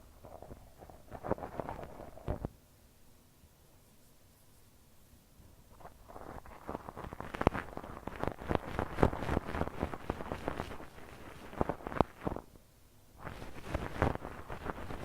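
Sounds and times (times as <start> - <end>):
ear pick scraping microphone: 5.8 - 12.4.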